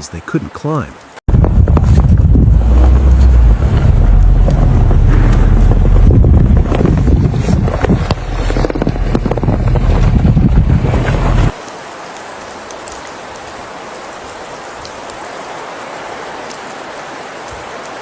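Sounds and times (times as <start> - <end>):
low rumble: 1.3 - 11.5
wind buffeting microphone: 1.3 - 11.6.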